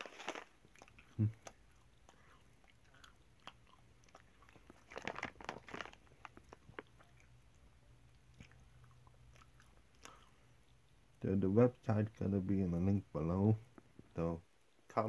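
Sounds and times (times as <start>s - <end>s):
chewing with mouth clicks: 0.0s - 10.8s.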